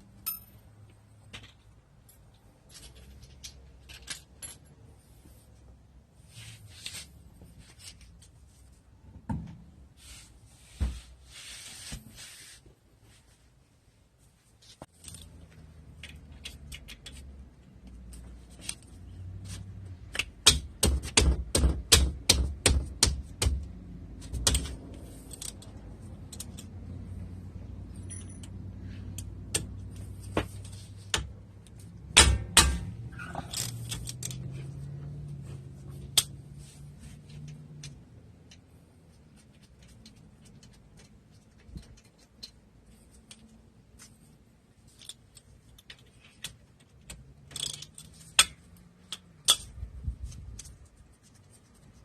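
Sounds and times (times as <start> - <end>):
metal tools clinking on brake parts: 0.2 - 0.9, 27.9 - 28.8, 33.1 - 34.5.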